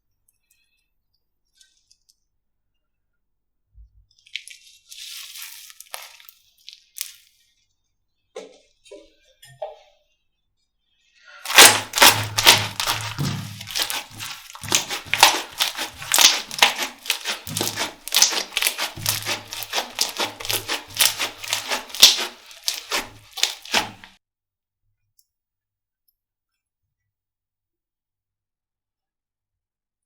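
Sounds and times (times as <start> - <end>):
slime squeezed by hand: 4.4 - 7.3, 11.4 - 24.1.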